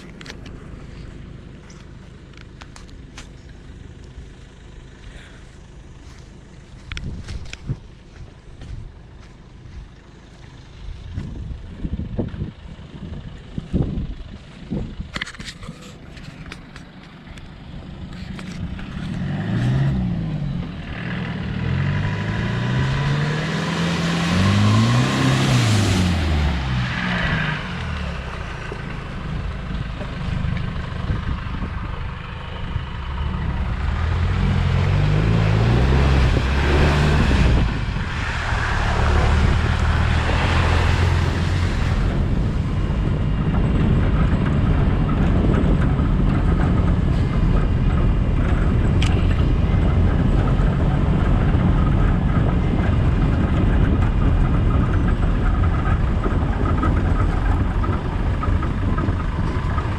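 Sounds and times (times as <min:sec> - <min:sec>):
diesel engine revving: 0:00.0 - 0:59.9
rushing noise: 0:33.1 - 0:59.9.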